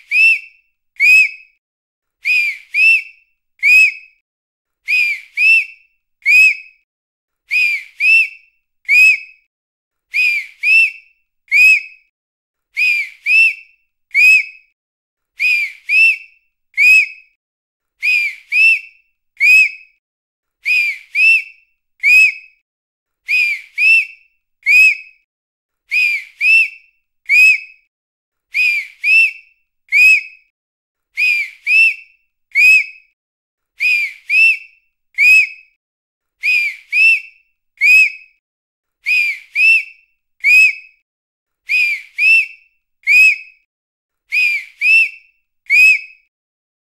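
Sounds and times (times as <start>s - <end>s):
shrill whistle blasts: 0.0s - 1.6s, 2.2s - 4.2s, 4.9s - 6.8s, 7.5s - 9.5s, 10.1s - 12.1s, 12.8s - 14.8s, 15.4s - 17.4s, 18.0s - 20.0s, 20.6s - 22.6s, 23.3s - 25.2s, 25.9s - 27.9s, 28.5s - 30.5s, 31.2s - 33.2s, 33.8s - 35.8s, 36.4s - 38.4s, 39.0s - 41.0s, 41.7s - 43.7s, 44.3s - 46.3s.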